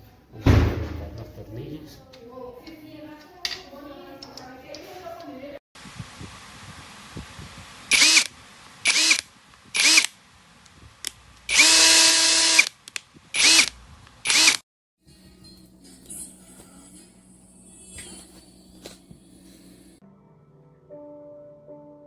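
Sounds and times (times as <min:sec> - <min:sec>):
impact wrench bursts: 0:07.9 - 0:08.3, 0:08.9 - 0:10.1, 0:11.5 - 0:12.8, 0:13.4 - 0:14.6.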